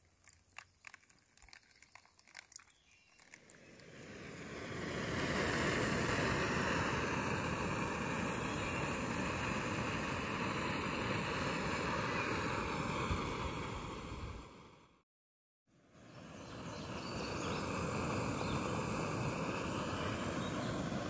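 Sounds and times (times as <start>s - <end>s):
camp stove burner hissing: 3.7s - 14.8s, 16.0s - 21.0s.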